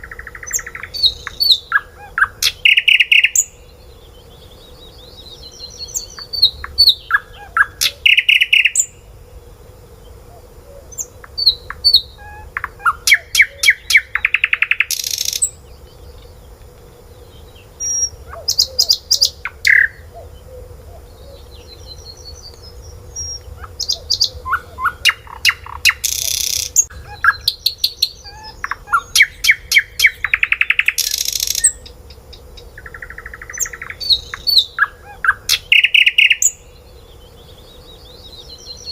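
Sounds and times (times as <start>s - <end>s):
birds chirping and trilling: 0.0s - 38.9s.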